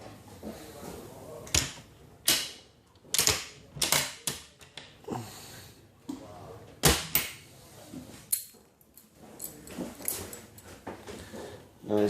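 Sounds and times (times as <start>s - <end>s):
latches and cabinet doors clicking: 1.5s - 4.9s.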